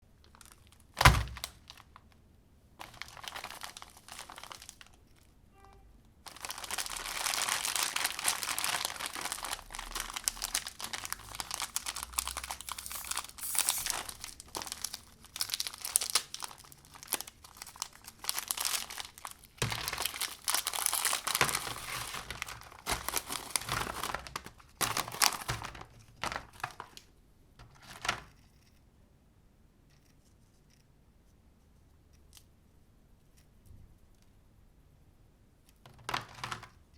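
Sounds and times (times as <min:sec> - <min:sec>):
plastic packaging crinkling and tearing: 0:00.2 - 0:02.2, 0:02.8 - 0:05.3, 0:06.2 - 0:27.1.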